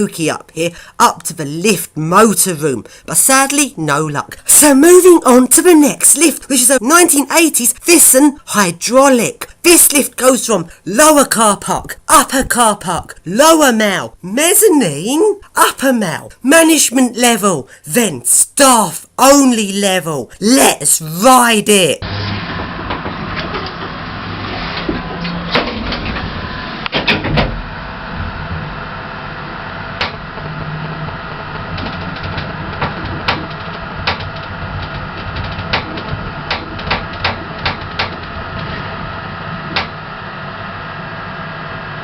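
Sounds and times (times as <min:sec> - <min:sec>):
lift mechanical hum: 0:22.0 - 0:42.0.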